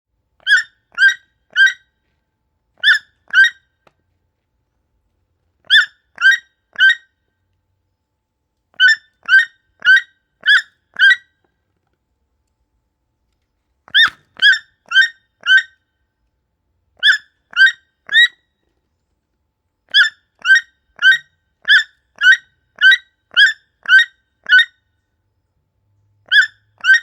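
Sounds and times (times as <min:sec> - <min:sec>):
toucan calling: 0:00.4 - 0:01.8, 0:02.8 - 0:03.6, 0:05.6 - 0:07.1, 0:08.8 - 0:11.3, 0:13.9 - 0:15.8, 0:17.0 - 0:18.4, 0:19.9 - 0:24.8, 0:26.3 - 0:27.0.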